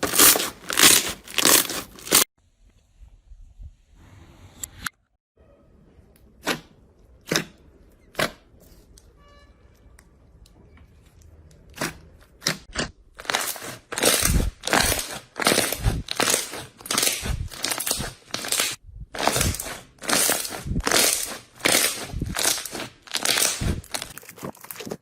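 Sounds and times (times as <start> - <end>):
crunchy slime crackles: 0.0 - 2.3, 11.7 - 25.0
slime squeezed by hand: 13.2 - 24.2.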